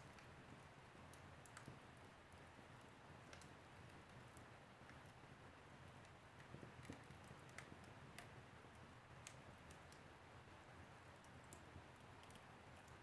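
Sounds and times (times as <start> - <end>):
wood fire crackling: 0.0 - 10.2.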